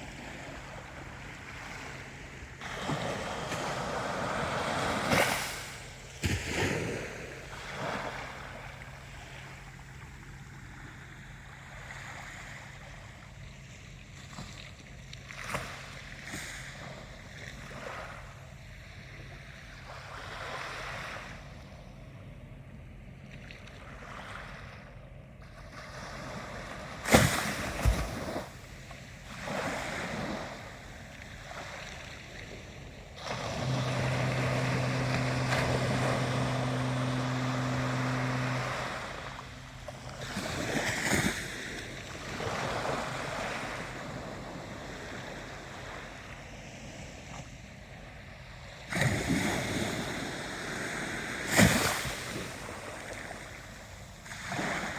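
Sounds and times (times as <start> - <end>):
ocean waves washing in: 0.0 - 14.7, 25.8 - 47.4
steady low hum: 27.6 - 48.3.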